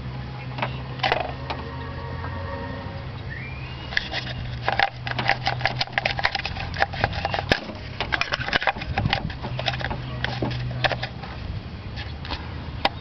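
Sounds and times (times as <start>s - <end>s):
low hum: 0.0s - 9.2s
small hard parts clicking: 3.9s - 11.2s.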